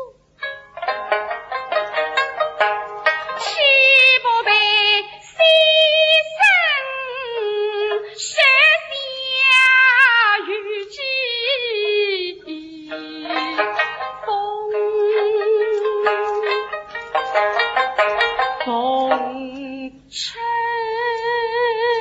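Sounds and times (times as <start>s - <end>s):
plucked string accompaniment: 0.0s - 22.0s
high voice singing: 3.3s - 16.9s.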